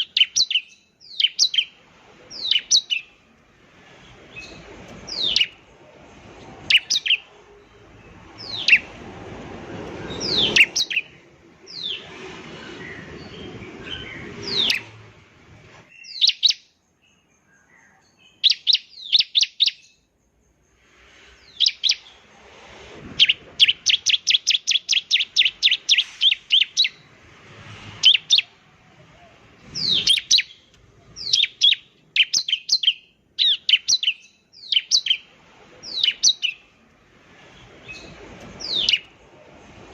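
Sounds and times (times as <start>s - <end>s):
bird singing high sweeping notes: 4.0s - 5.7s, 6.5s - 22.3s, 23.2s - 27.2s, 29.8s - 36.8s, 37.5s - 39.9s.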